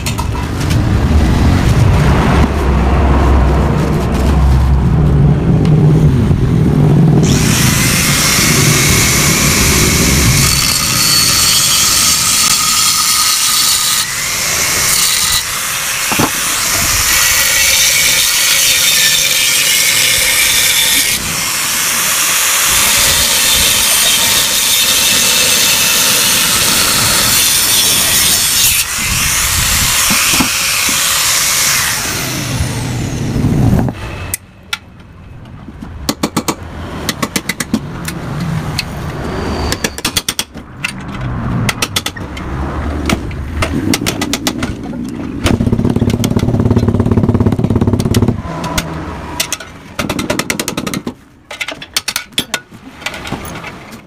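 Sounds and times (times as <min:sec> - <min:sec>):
power tool cutting metal: 0:07.2 - 0:33.2.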